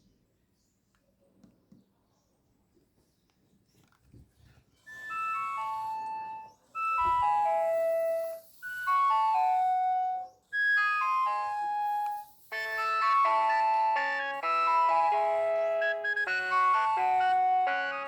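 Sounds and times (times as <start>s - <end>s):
mobile phone ringtone: 4.8s - 18.0s.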